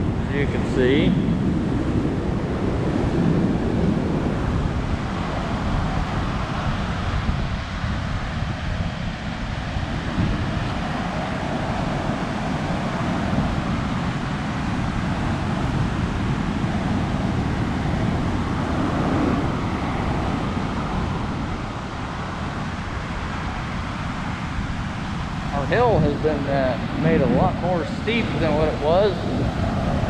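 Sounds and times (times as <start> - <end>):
wind buffeting microphone: 0.0 - 30.0.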